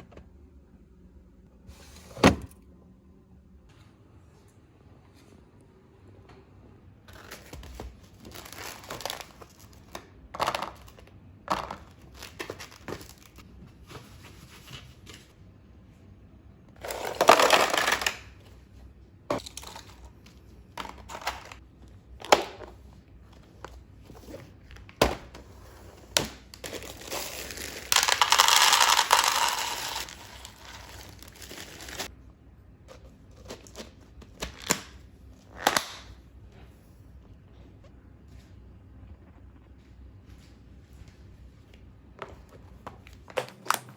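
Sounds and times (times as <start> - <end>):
plastic packaging crinkling: 7.1 - 10.0, 26.4 - 32.1.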